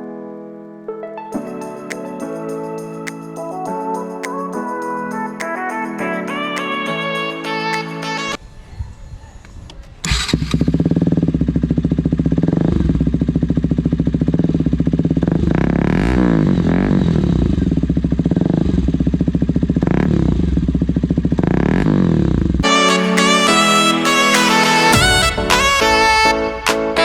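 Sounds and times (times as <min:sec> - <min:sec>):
motorcycle engine idling and revving: 0:10.1 - 0:22.6.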